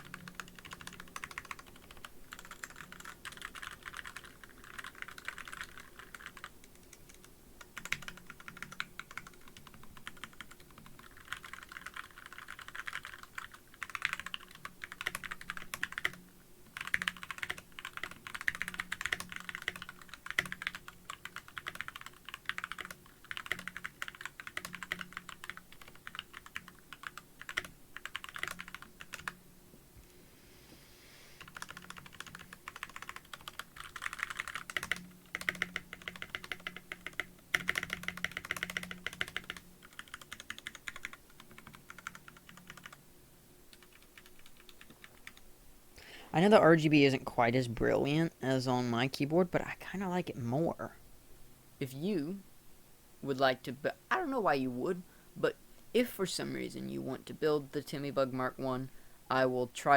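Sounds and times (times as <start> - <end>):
mechanical keyboard typing: 0.0 - 29.4, 31.4 - 43.0, 43.7 - 45.4.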